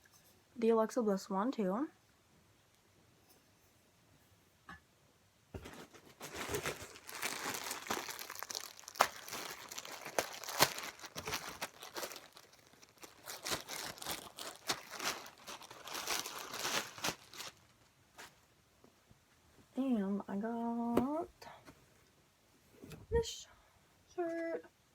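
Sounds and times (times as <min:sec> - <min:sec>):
packaging crinkling: 0:05.6 - 0:18.4.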